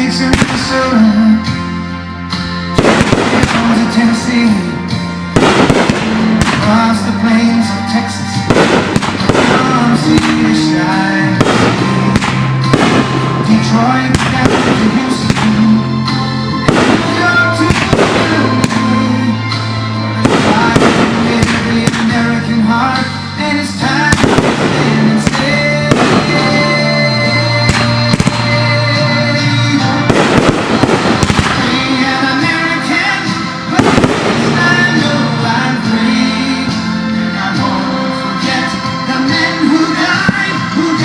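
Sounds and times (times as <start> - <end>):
fireworks bursting: 0.0 - 1.2, 2.8 - 4.6, 5.3 - 23.1, 23.8 - 36.2
loud music: 0.0 - 41.0.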